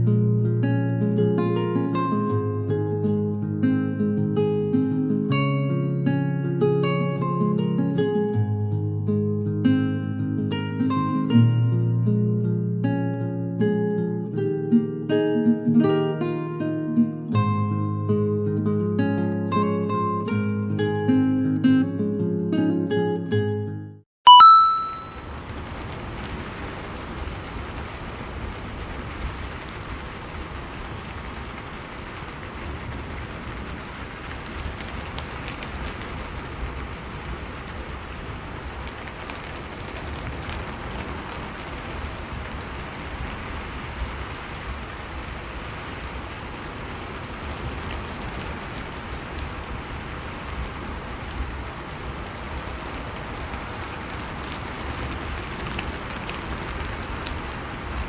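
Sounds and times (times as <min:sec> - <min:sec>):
steady rain hiss: 0:00.6 - 0:09.0, 0:25.2 - 0:58.0.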